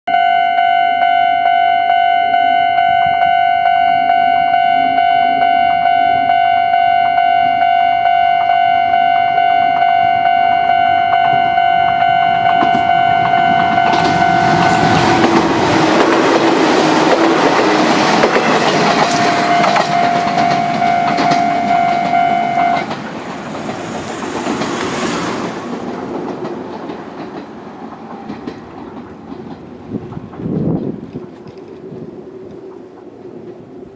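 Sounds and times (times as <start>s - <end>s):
level crossing alarm: 0.1s - 23.0s
train wheels clattering over rails: 12.3s - 33.9s.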